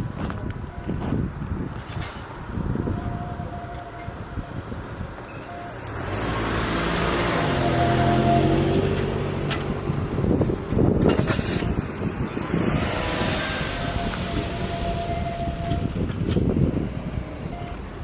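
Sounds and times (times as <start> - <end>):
vehicle passing by: 5.7 - 18.0
loud rough clatter: 10.4 - 12.0.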